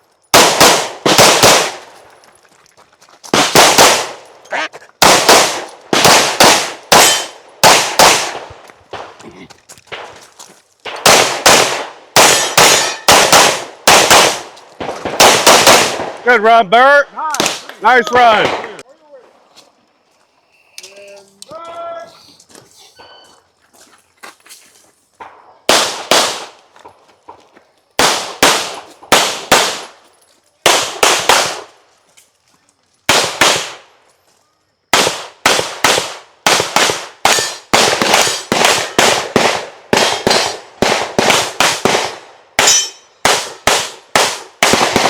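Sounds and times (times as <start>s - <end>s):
rapid pistol gunfire: 0.3s - 1.8s, 3.4s - 4.2s, 5.0s - 9.2s, 10.9s - 16.2s, 25.7s - 26.6s, 28.0s - 29.9s, 30.6s - 31.7s, 33.1s - 33.9s, 34.9s - 45.0s.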